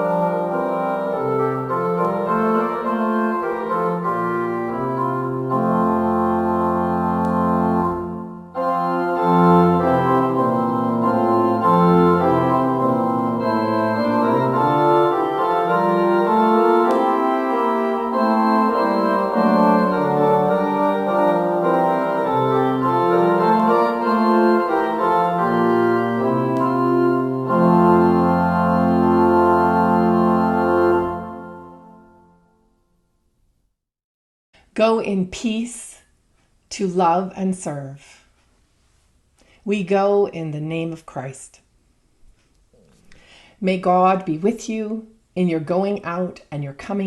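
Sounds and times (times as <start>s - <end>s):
organ playing sustained chords: 0.0s - 32.6s.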